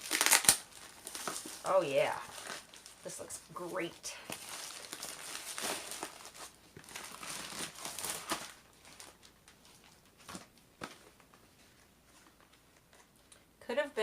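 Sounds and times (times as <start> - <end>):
packaging crinkling and rustling: 0.0 - 13.5.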